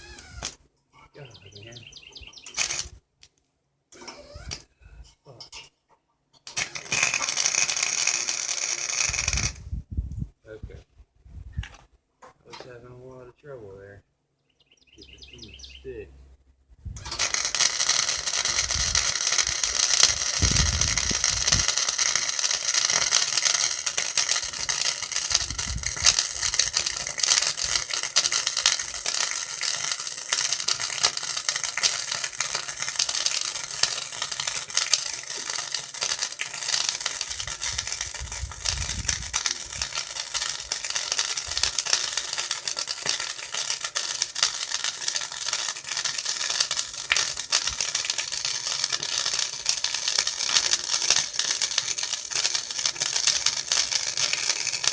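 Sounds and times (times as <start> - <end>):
welding arc crackling: 0.0 - 0.6, 1.5 - 3.0, 6.5 - 9.7, 17.0 - 54.9.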